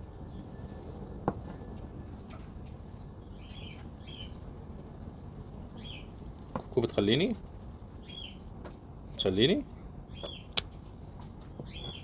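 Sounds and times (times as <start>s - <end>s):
sharp click: 10.2s - 10.8s.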